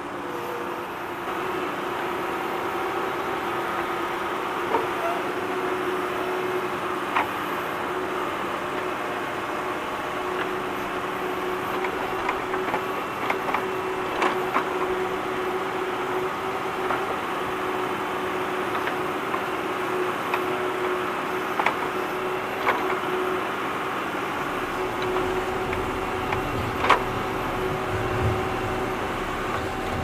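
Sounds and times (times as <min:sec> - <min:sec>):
tractor engine running: 0:00.6 - 0:30.0
equipment knocking and clanking: 0:24.4 - 0:30.0.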